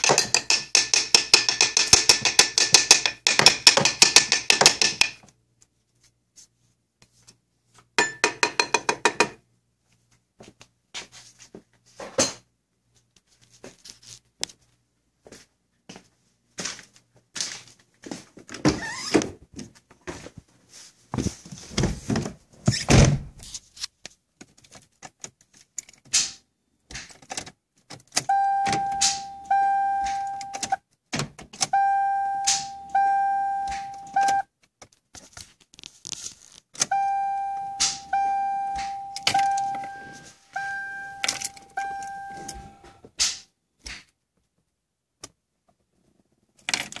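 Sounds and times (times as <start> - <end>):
knocks and thuds: 0.0 - 5.2
car electronic warning chime: 28.3 - 30.8, 31.7 - 34.5, 36.9 - 43.0.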